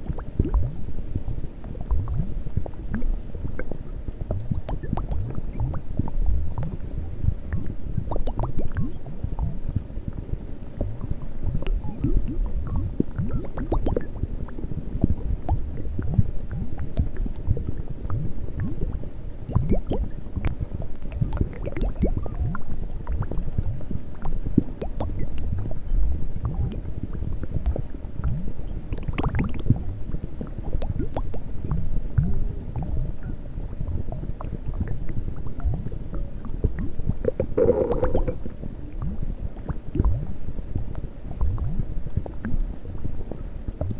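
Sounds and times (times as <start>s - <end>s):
stomach growling and gurgling: 0.0s - 43.9s
high-pitched stomach squeal: 37.6s - 38.5s.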